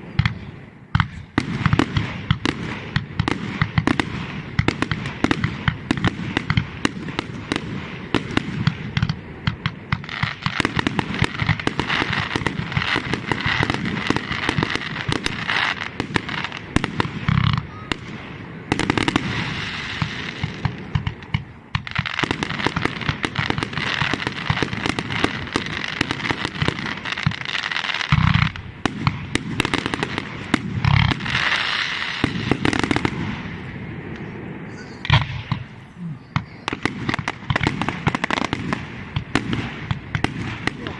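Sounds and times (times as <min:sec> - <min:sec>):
fireworks crackling: 0:00.0 - 0:40.9.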